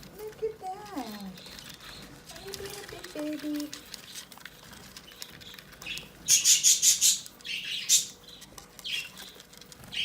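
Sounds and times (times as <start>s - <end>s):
budgies harsh raspy calls: 5.1s - 9.3s.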